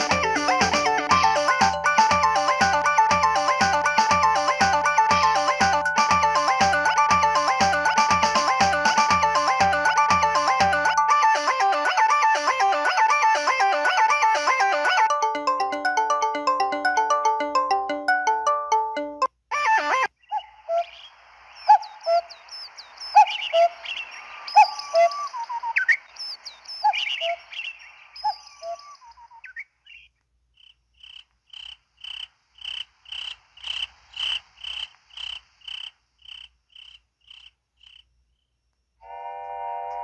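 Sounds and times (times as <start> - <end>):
frog-like calls: 19.6 - 26.1, 26.8 - 38.1
bird chirps: 20.1 - 38.0
cricket-like chirping: 20.2 - 38.8
hiss: 32.1 - 36.2.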